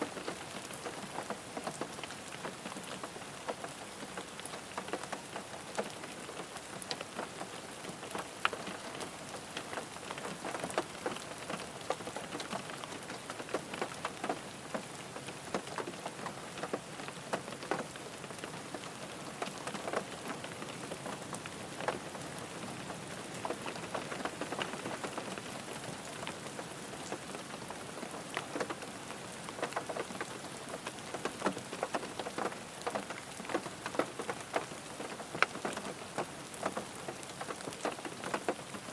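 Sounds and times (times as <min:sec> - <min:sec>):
rain hissing on a car: 0:00.0 - 0:38.9
raindrops tapping on car body: 0:30.8 - 0:38.8.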